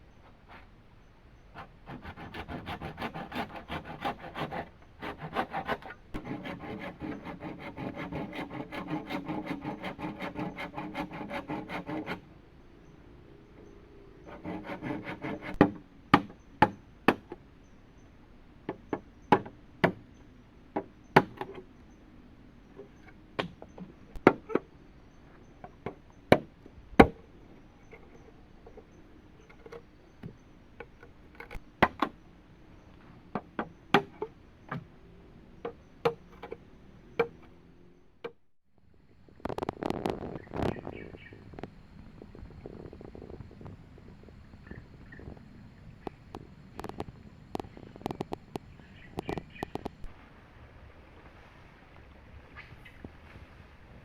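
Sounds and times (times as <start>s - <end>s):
hand saw cutting bamboo: 1.6s - 12.3s, 14.3s - 16.3s.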